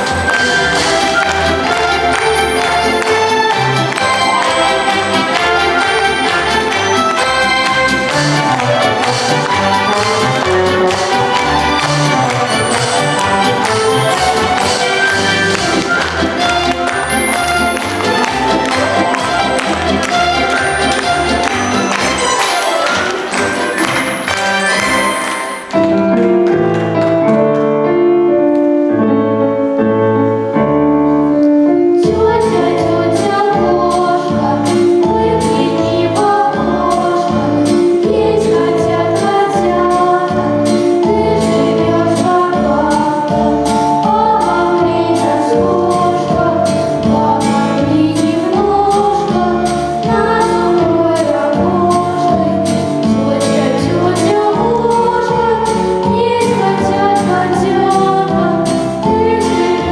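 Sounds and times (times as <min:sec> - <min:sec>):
group of voices singing: 0:00.0 - 0:25.7, 0:32.1 - 0:59.9
upbeat dance music: 0:00.0 - 0:25.8.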